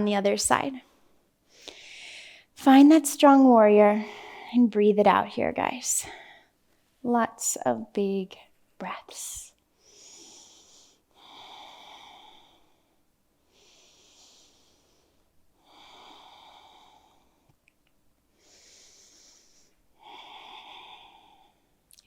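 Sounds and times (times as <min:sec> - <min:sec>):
person breathing deeply: 0:01.0 - 0:02.5, 0:09.8 - 0:17.5, 0:18.4 - 0:21.8.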